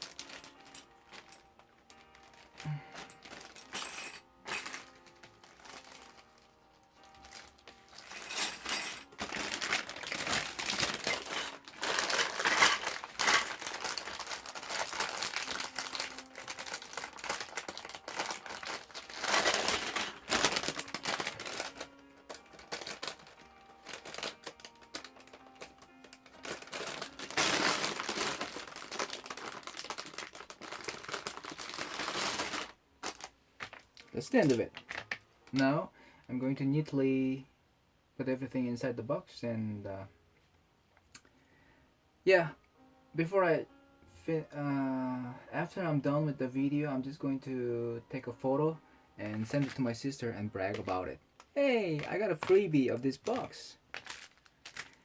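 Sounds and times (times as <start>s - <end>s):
plastic bags crinkling: 0.0s - 35.7s, 49.2s - 55.0s
faint background music: 0.0s - 55.0s.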